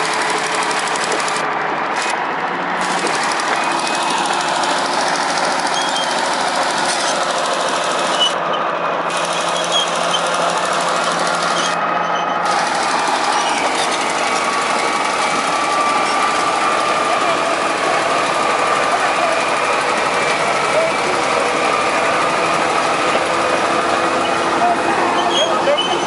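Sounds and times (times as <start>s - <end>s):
heavy machinery running: 0.0s - 26.0s.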